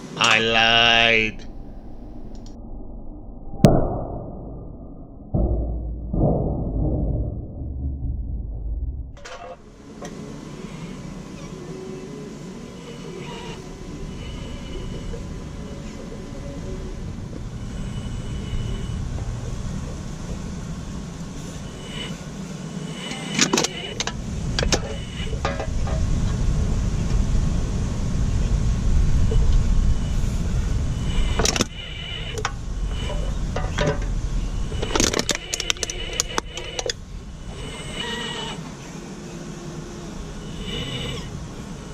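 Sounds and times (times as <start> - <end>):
muffled low rumble: 0.0 - 12.7, 13.5 - 22.5, 24.0 - 38.9
small electric motors whining: 9.6 - 27.0, 28.4 - 41.9.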